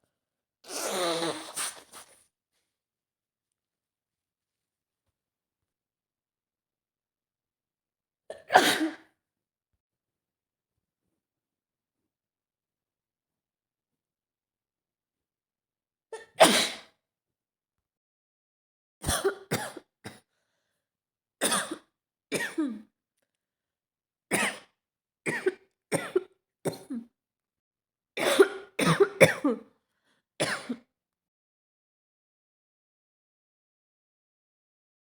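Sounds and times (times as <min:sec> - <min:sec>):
woman coughing: 0:08.4 - 0:09.1, 0:19.0 - 0:20.2, 0:21.4 - 0:22.8, 0:25.3 - 0:27.1, 0:28.2 - 0:29.6, 0:30.4 - 0:30.8.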